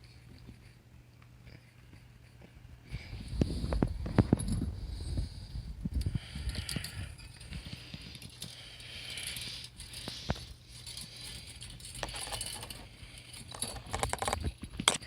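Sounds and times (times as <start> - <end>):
small clicks and light rattling: 6.0 - 15.0.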